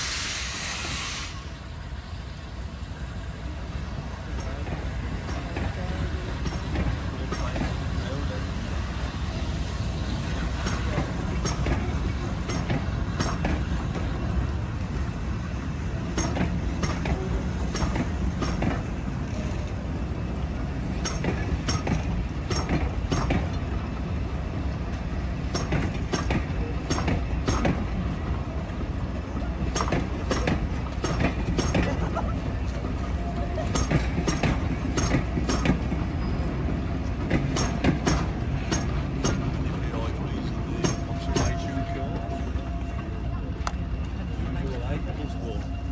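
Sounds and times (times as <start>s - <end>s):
train rumbling by: 0.0s - 45.9s
wheels clicking over rail joints: 4.3s - 7.8s, 10.4s - 20.2s, 21.0s - 23.8s, 24.9s - 42.3s.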